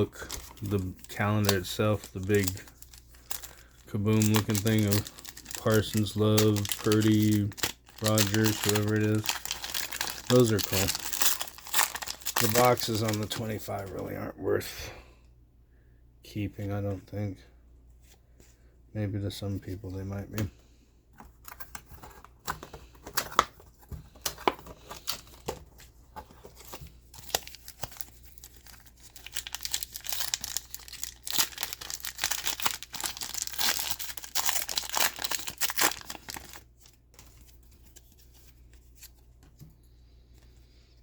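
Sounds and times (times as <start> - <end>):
wrapper tearing and crinkling: 0.0 - 13.5, 27.2 - 37.3.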